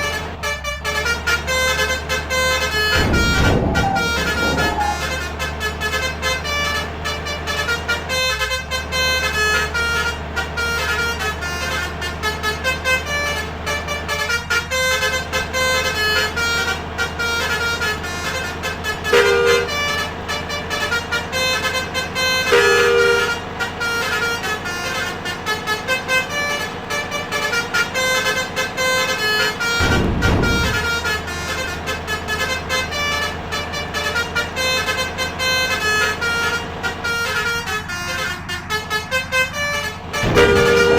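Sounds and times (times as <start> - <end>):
engine and road drone: 0.0 - 40.9
trumpet horn playing tunes: 0.4 - 40.9.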